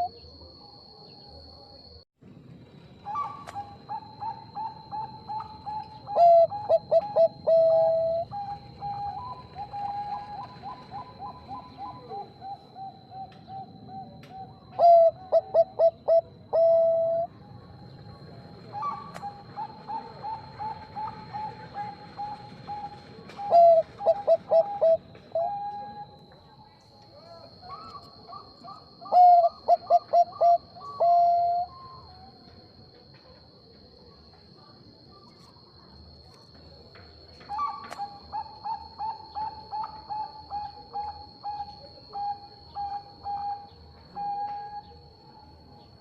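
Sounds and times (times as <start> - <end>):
doves cooing: 0.0 - 0.2, 3.0 - 17.3, 18.1 - 26.2, 27.5 - 32.5, 37.5 - 45.1.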